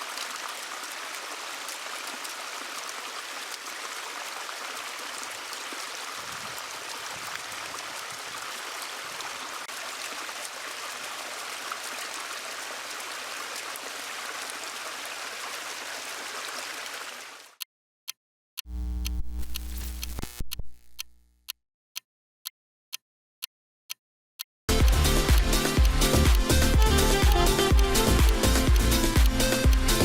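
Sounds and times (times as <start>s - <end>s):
water splashing over stones: 0.0s - 17.6s.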